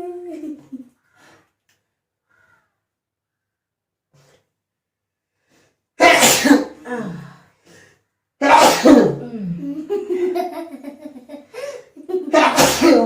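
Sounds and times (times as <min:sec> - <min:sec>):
person sneezing: 0:06.0 - 0:07.2, 0:08.4 - 0:09.3, 0:12.3 - 0:13.0.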